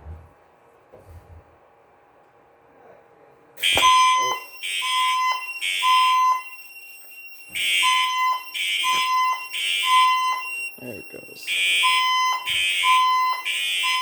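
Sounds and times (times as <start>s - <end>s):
fire alarm pulses: 3.6s - 14.0s.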